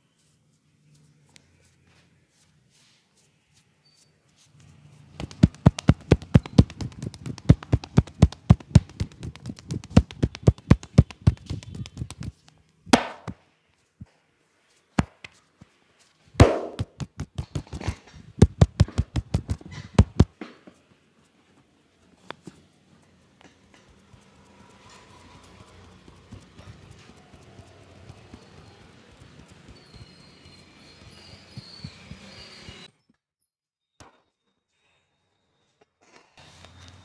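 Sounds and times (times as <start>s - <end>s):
hands tapping and slapping skin: 5.2s - 13.4s, 15.0s - 15.4s, 16.4s - 20.3s.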